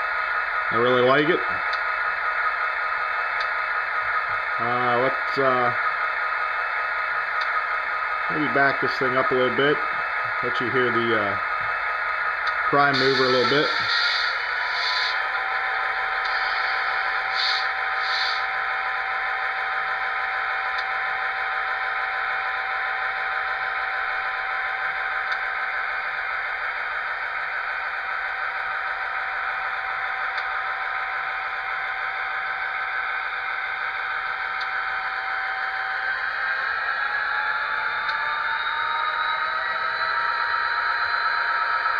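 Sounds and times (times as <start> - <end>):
steady whine: 0.0 - 41.9
diesel engine sound from small speaker: 0.6 - 1.9, 4.4 - 5.9, 7.2 - 11.8, 12.4 - 27.6.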